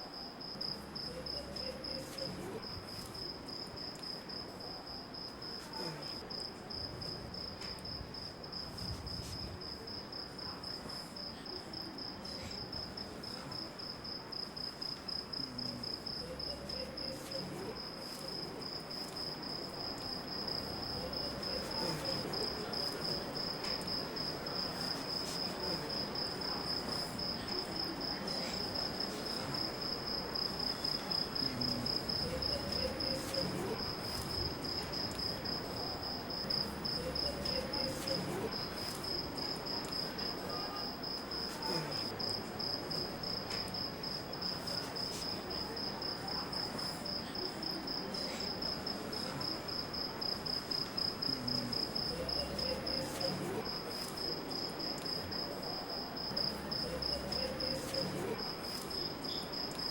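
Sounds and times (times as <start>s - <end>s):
crickets chirping: 0.0s - 59.9s
faint low background murmur: 0.0s - 59.9s.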